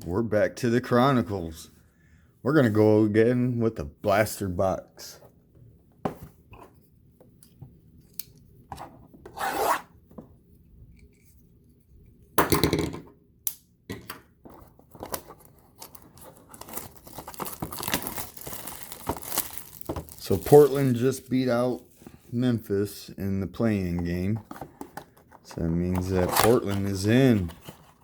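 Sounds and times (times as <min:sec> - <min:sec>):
pack wrappers crinkling: 0:15.0 - 0:21.9
cardboard and wrappers tearing: 0:15.1 - 0:21.8, 0:26.0 - 0:28.0.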